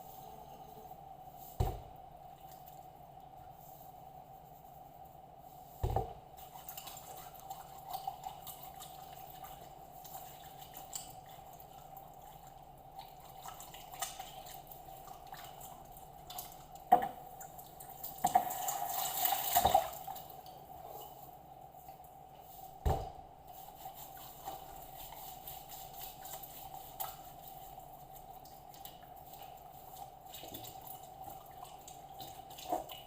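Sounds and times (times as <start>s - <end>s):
water running into sink: 18.1s - 20.2s.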